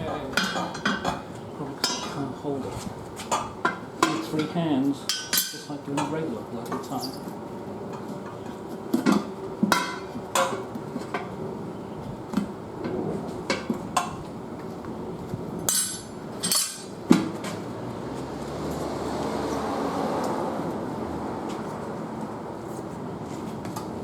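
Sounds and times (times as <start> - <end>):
metal clanks on wheel rim: 0.1 - 2.3, 3.2 - 7.4, 8.0 - 11.4, 12.3 - 14.3, 15.6 - 17.7.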